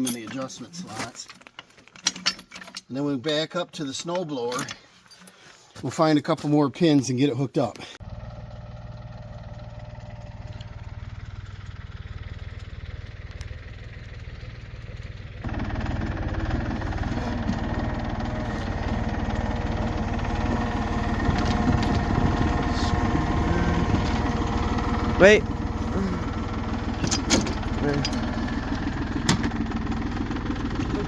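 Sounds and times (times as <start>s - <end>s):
tractor engine idling: 8.0s - 31.0s.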